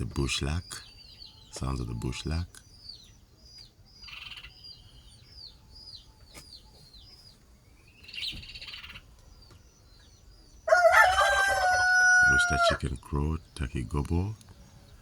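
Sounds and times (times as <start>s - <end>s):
lark chirping: 0.0s - 15.0s
rooster crowing: 10.7s - 12.8s.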